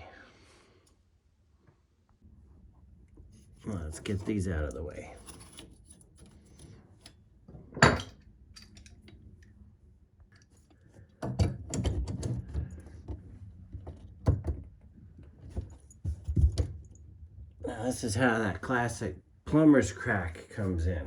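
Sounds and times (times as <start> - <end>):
drain pipe pieces knocking: 7.5 - 8.9.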